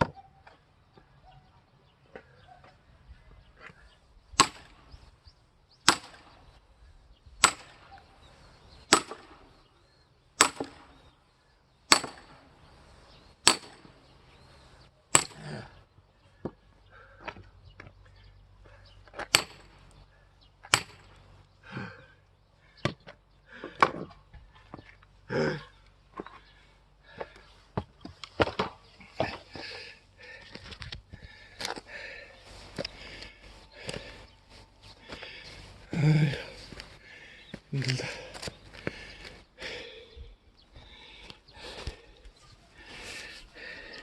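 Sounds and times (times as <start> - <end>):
axe chopping log: 4.4 - 4.8, 5.9 - 6.3, 7.4 - 7.9, 8.9 - 9.3, 10.4 - 10.8, 11.9 - 12.4, 13.4 - 13.9, 15.2 - 15.6, 19.2 - 19.7, 20.7 - 21.1, 22.8 - 24.1, 28.4 - 29.4.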